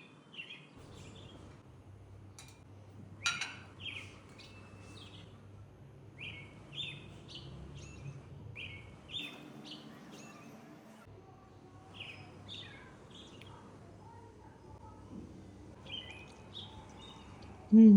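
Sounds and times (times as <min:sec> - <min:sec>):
small birds chirping: 0:11.9 - 0:14.9, 0:15.7 - 0:17.7.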